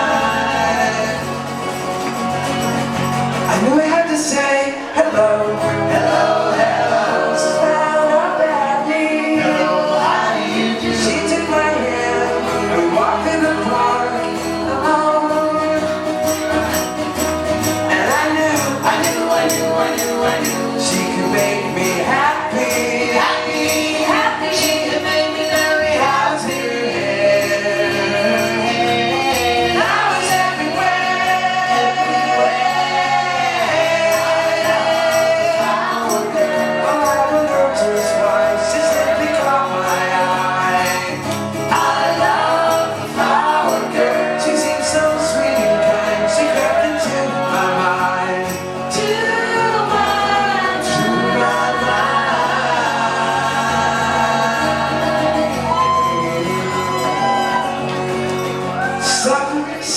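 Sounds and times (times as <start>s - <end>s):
tambourine beat: 0.0s - 3.9s, 13.6s - 59.2s
group vocal harmonies: 0.0s - 59.9s
live pop band playing: 0.0s - 59.9s.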